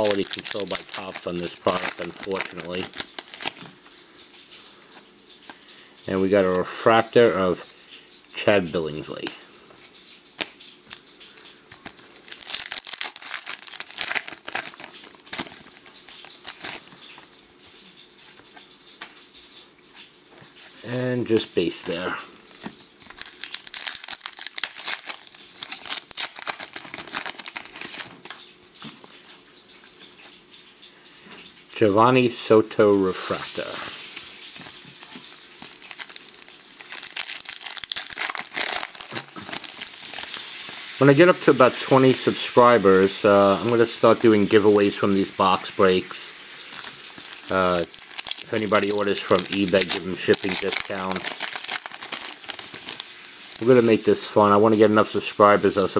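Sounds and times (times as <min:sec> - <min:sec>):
cards being shuffled: 0:00.0 - 0:03.8, 0:11.7 - 0:17.3, 0:21.4 - 0:29.4, 0:33.6 - 0:40.9, 0:46.7 - 0:54.2
wrapper crinkling: 0:00.0 - 0:04.0, 0:09.9 - 0:19.6, 0:20.6 - 0:29.1, 0:33.2 - 0:54.6.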